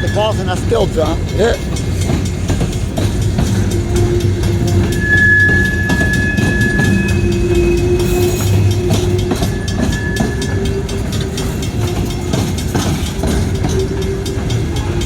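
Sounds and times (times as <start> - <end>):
train cars rumbling past: 0.0 - 15.0
wheels clickety-clack: 0.0 - 15.0
thin wheel squeal: 3.7 - 13.9.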